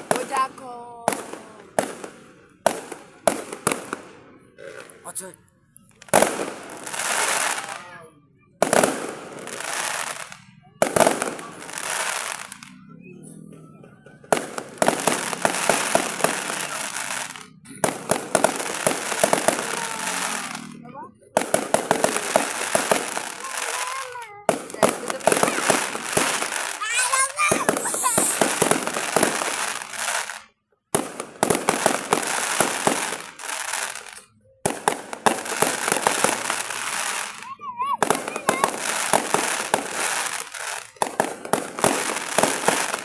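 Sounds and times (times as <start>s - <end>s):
fireworks crackling and popping: 0.0s - 43.0s
firework bang: 14.3s - 43.0s.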